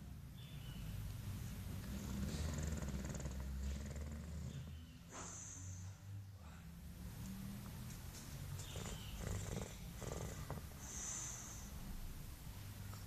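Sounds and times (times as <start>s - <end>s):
dog snoring: 1.8s - 4.8s, 8.6s - 11.7s.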